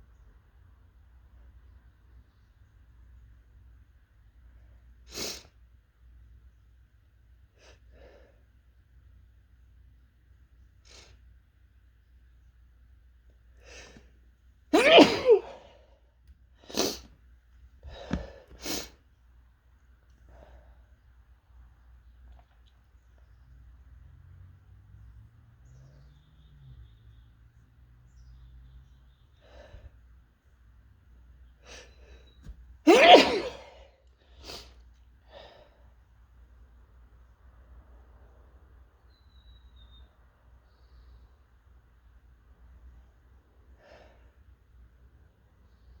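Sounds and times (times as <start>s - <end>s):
person sneezing: 14.7s - 15.8s, 32.9s - 34.7s
short breaths: 17.8s - 19.0s, 29.4s - 30.0s.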